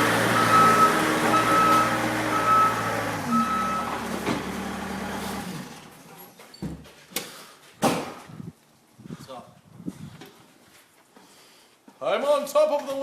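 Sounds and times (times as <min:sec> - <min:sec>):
heavy vehicle engine running: 0:00.0 - 0:06.0
backup alarm beeping: 0:00.4 - 0:04.0.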